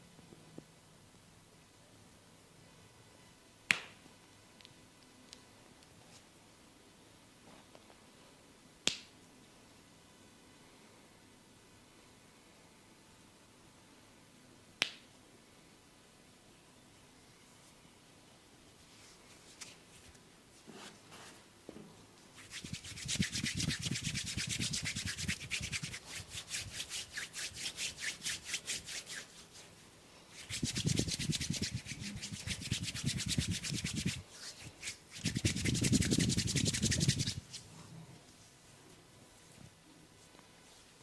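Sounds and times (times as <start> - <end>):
hair and scalp being scratched: 22.4 - 29.7, 30.3 - 37.6.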